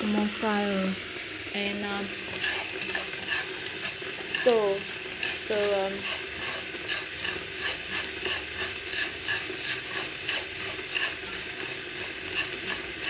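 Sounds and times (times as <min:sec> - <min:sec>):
spatula scraping rice in pan: 0:02.2 - 0:13.0.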